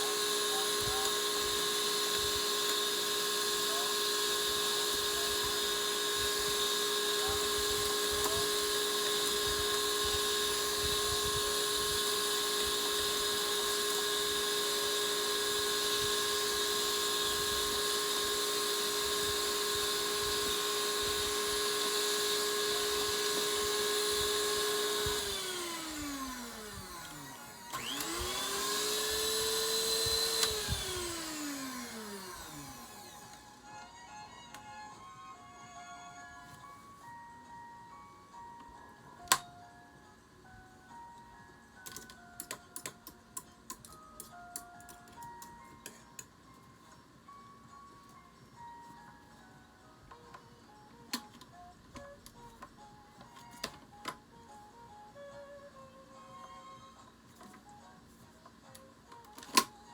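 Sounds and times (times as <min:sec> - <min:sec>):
electric mixer motor running: 0:00.0 - 0:33.7.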